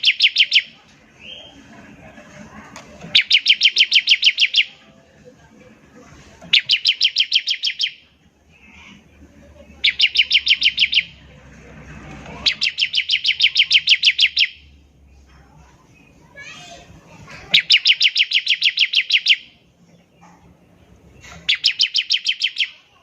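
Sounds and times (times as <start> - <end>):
bird singing rapid trill: 0.0 - 1.6, 3.1 - 4.8, 6.5 - 9.0, 9.8 - 11.3, 12.4 - 15.2, 17.5 - 19.6, 21.4 - 23.0.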